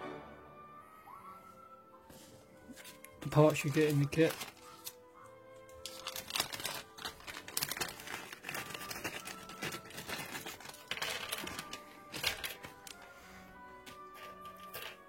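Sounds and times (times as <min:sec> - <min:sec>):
plastic packaging crinkling: 0:02.7 - 0:13.1.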